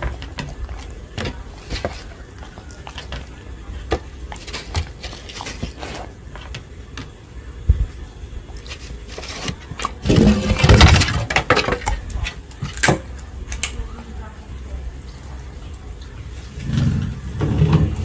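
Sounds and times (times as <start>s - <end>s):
dog chewing and smacking food: 0.0s - 13.3s.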